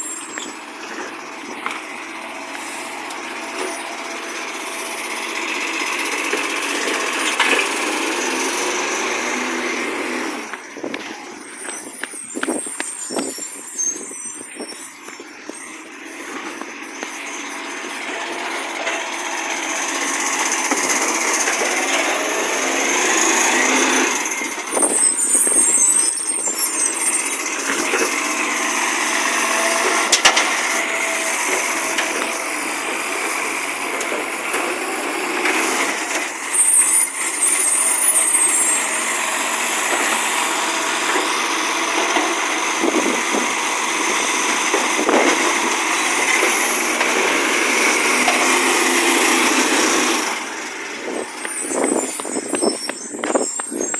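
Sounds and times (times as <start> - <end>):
diesel truck engine running: 0.0 - 53.9
air brake hisses: 2.5 - 3.8.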